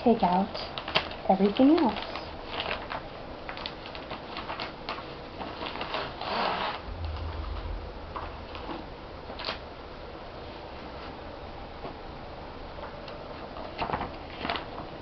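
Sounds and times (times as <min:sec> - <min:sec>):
dull low bump: 0:06.8 - 0:10.4.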